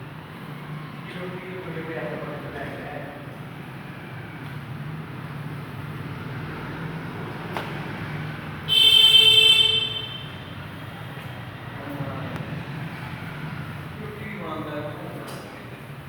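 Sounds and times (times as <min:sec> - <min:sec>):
vehicle horn: 0:08.7 - 0:10.4.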